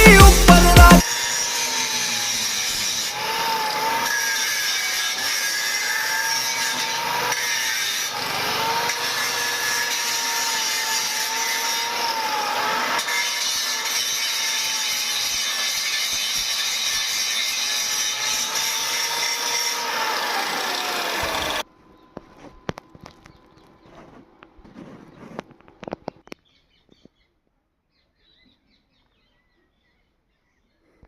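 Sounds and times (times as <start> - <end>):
power tool motor whining on metal: 0.0 - 21.7.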